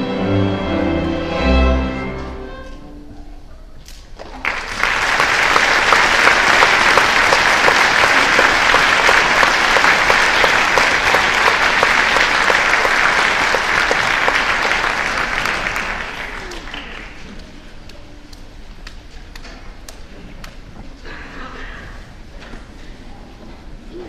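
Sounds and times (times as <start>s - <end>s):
audience applause: 4.2s - 17.6s.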